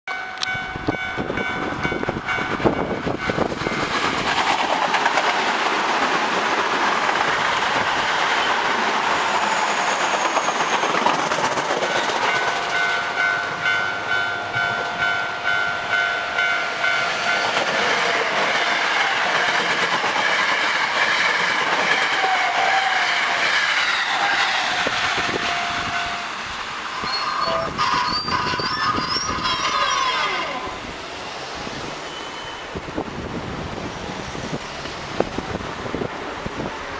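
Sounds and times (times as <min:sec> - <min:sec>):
level crossing warning bell: 0:00.1 - 0:03.9, 0:11.8 - 0:18.6, 0:25.4 - 0:26.4
train wheels clattering over rail joints: 0:02.1 - 0:13.3, 0:16.8 - 0:25.4.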